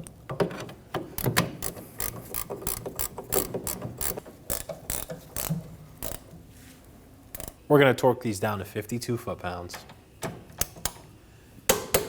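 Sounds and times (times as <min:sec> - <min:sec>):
ratchet wrench clicking: 0:01.2 - 0:06.3, 0:07.3 - 0:07.6, 0:10.6 - 0:11.0.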